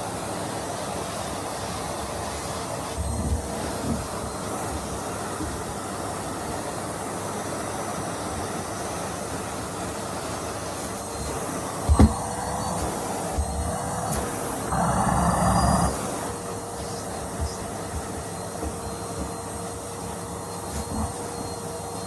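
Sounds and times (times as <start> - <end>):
vacuum cleaner running: 0.0 - 22.0
dull thumps: 11.9 - 12.4.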